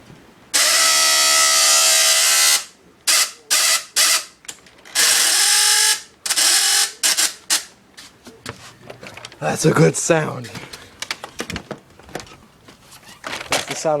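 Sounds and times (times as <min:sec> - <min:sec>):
small electric motor whirring: 0:00.6 - 0:04.3.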